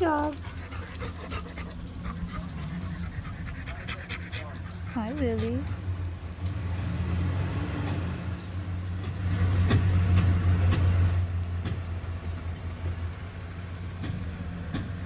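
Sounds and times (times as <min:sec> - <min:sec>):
engine humming steadily: 0:00.0 - 0:15.0
faint clicks: 0:05.6 - 0:06.5.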